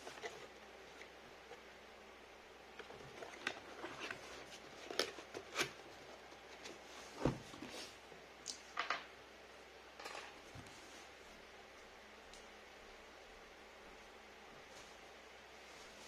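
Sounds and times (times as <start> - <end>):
packaging clicks and rustles: 2.7 - 7.7.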